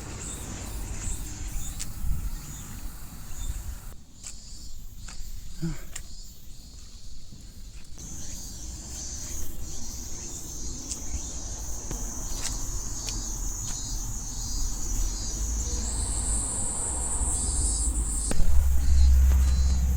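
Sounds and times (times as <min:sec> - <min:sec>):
higher-pitched insect: 0:00.0 - 0:07.0, 0:08.0 - 0:19.9
insects shrilling in chorus: 0:00.0 - 0:07.0, 0:07.7 - 0:19.9
low outdoor rumble: 0:08.0 - 0:19.9.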